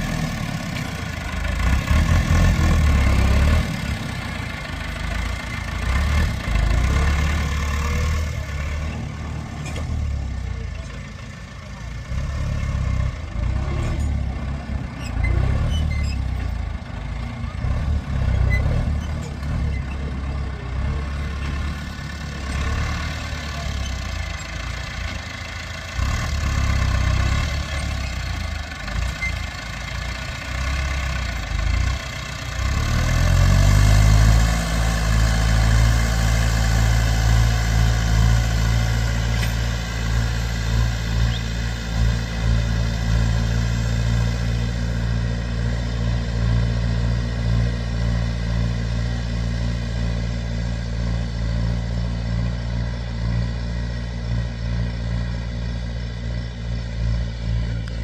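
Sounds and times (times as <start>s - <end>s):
tractor diesel engine running: 0.0s - 58.0s.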